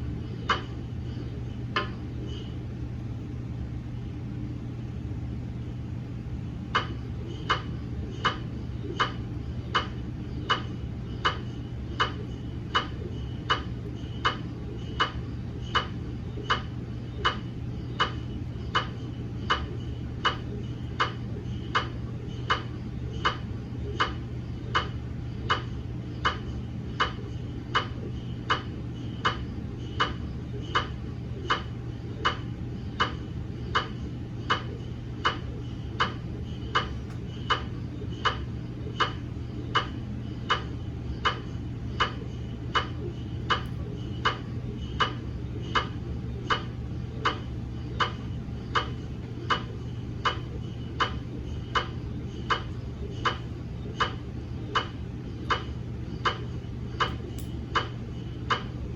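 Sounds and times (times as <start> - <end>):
mri scanner clicking: 0.0 - 2.5, 6.6 - 58.9
steady low hum: 0.0 - 58.9.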